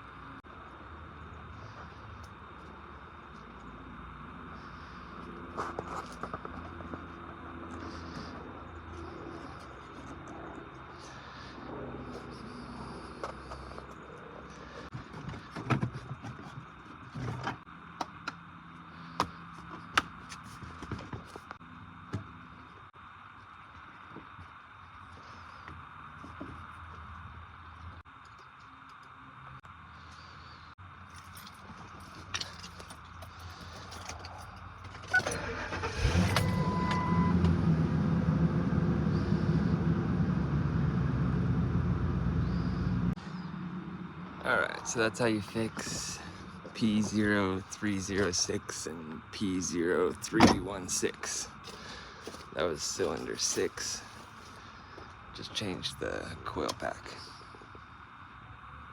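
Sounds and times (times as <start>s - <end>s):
engine idling: 0.0s - 20.8s, 31.2s - 57.9s
engine cranking: 32.3s - 37.8s
short beep: 36.4s - 37.4s.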